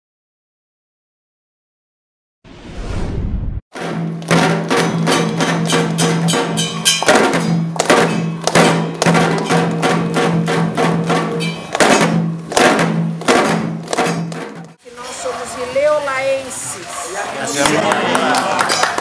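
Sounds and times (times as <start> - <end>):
hand drums playing fast rhythm: 4.1 - 14.8.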